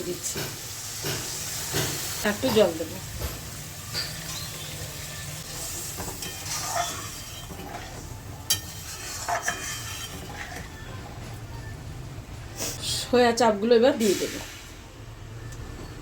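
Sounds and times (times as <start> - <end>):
paste sizzling in a pan: 0.0 - 10.8
spatula scraping a pan: 3.5 - 11.4.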